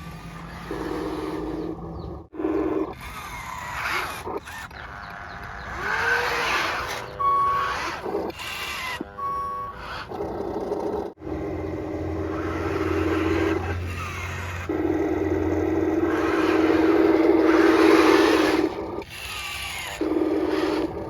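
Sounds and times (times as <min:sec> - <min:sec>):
electric motors whining: 0:00.0 - 0:21.0
short electronic beeps: 0:07.0 - 0:07.8, 0:09.2 - 0:09.8.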